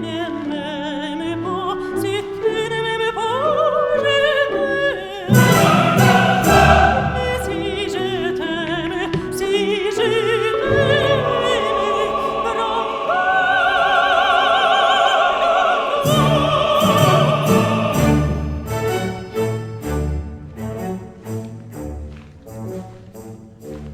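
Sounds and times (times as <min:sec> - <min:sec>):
operatic voice singing: 0:00.0 - 0:19.4
orchestra playing: 0:05.2 - 0:23.9.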